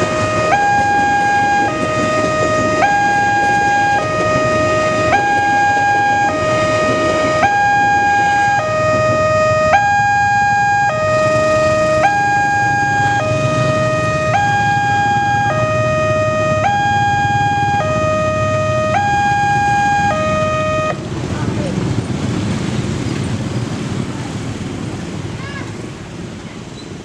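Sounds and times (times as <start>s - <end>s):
two-tone crossing alarm: 0.0s - 21.0s.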